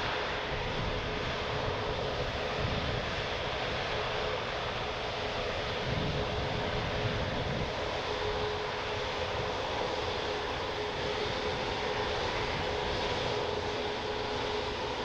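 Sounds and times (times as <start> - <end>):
jet engines running: 0.0 - 15.0
wind rumble on microphone: 0.1 - 9.8.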